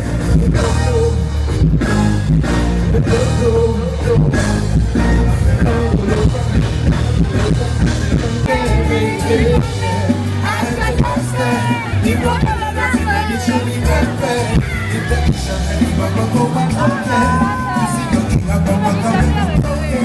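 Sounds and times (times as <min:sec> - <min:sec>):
live band music: 0:00.0 - 0:20.0
person singing: 0:00.0 - 0:20.0.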